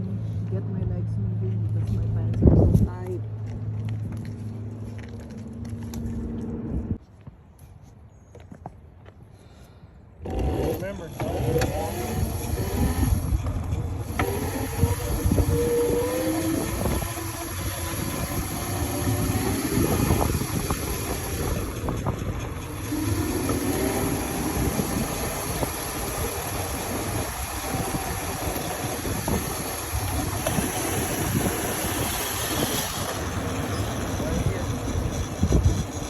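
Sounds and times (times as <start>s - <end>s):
rumbling wind and ground noise: 0.0s - 36.0s
mini motorbike motor whining: 10.2s - 36.0s.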